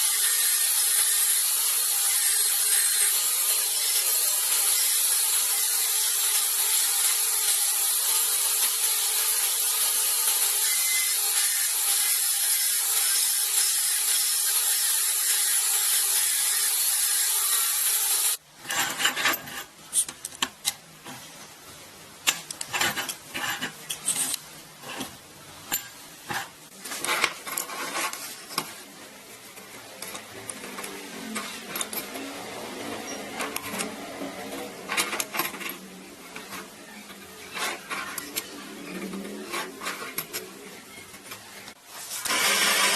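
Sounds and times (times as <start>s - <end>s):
irregular knocks and scrapes: 26.2s - 28.9s
tool sawing material: 42.1s - 42.9s.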